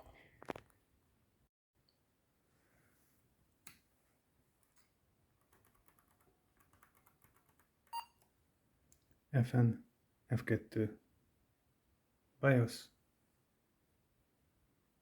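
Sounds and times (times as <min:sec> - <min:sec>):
laptop keys clicking: 0:04.6 - 0:08.0.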